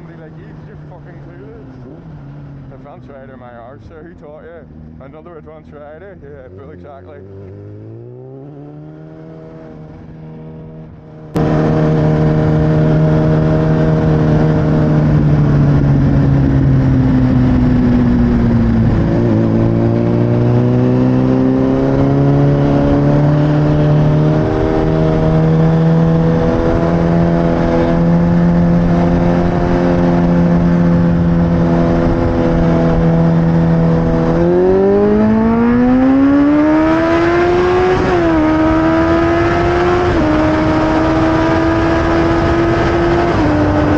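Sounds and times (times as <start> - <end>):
motorcycle engine: 0.0 - 43.9
wind noise: 9.5 - 43.9.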